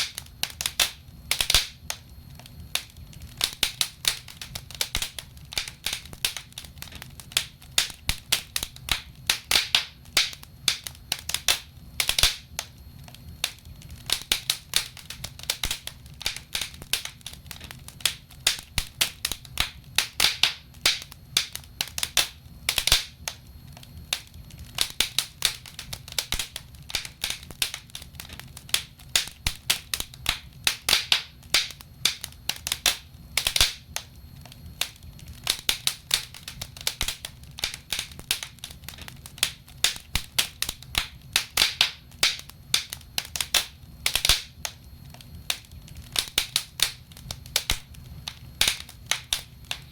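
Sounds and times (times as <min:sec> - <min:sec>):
logs crackling in fireplace: 0:00.0 - 0:49.9.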